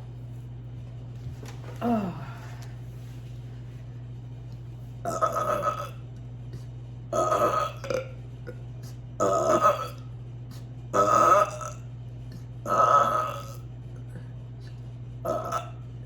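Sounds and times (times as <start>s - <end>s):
woman burping: 5.1s - 6.0s, 7.1s - 8.1s, 9.2s - 10.0s, 11.0s - 11.8s, 12.7s - 13.6s, 15.3s - 15.7s.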